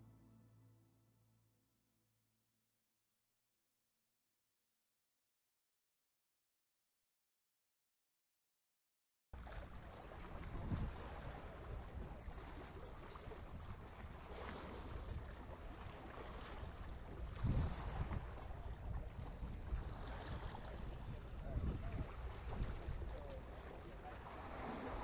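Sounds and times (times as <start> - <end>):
wind buffeting microphone: 10.3 - 25.0
ocean surf: 19.9 - 25.0.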